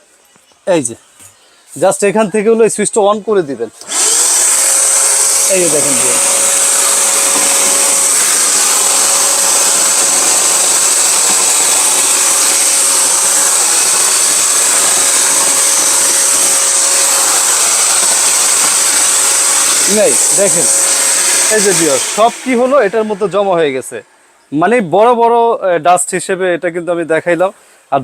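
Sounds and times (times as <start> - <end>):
vacuum cleaner running: 3.8 - 23.8.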